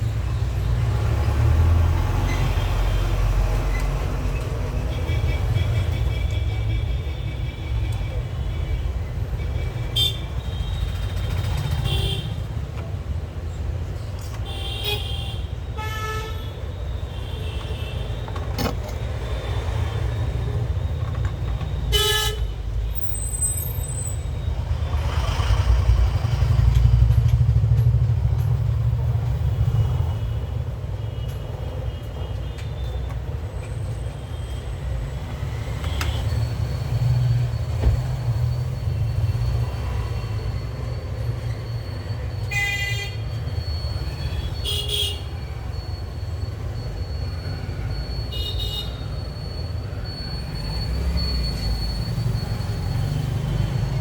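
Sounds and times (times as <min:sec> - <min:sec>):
road traffic rumbling: 0:00.0 - 0:54.0
vehicle horn toots: 0:21.9 - 0:22.5.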